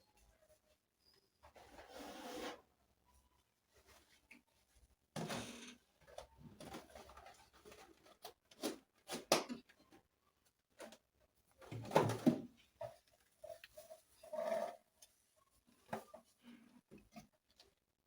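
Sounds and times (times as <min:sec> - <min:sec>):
rustling and shuffling: 0:03.1 - 0:14.3.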